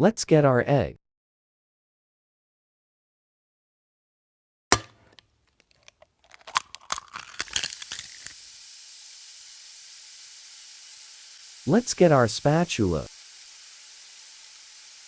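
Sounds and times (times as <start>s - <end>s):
egg frying sizzle: 4.7s - 15.0s.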